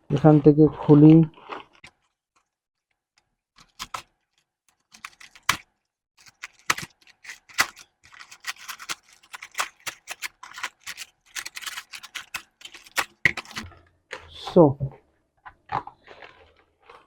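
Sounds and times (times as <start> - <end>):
cardboard and plastic crackling: 3.6 - 4.1, 4.7 - 14.2.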